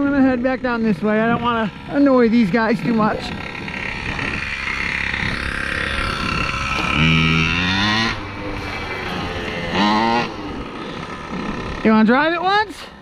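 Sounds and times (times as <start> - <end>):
toy truck motor revving: 1.7 - 12.1.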